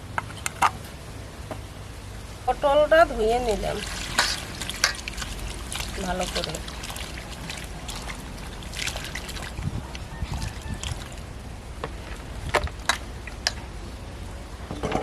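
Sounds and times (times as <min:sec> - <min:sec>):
water sloshing and splashing: 0:03.2 - 0:14.4.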